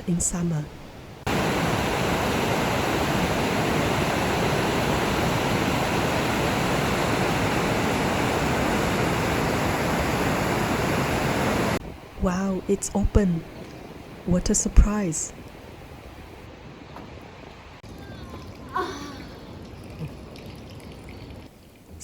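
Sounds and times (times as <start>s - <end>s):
river water rushing: 1.2s - 11.8s.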